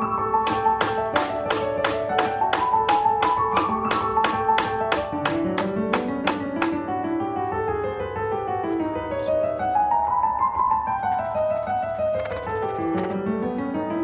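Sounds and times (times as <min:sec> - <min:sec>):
piano melody: 0:00.0 - 0:14.0
tapping beat: 0:00.5 - 0:06.8.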